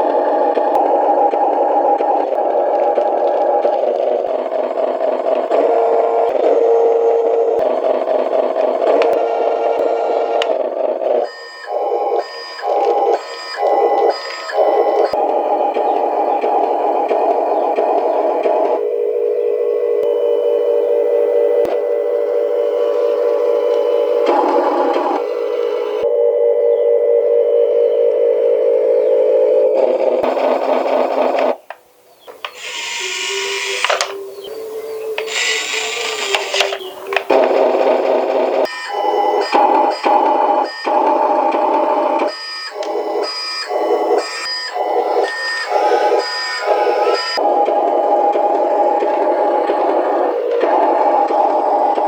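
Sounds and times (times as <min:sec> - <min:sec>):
toy truck motor droning hum: 0:00.0 - 0:31.7, 0:32.4 - 0:52.0
small electric motor whining: 0:32.3 - 0:52.0.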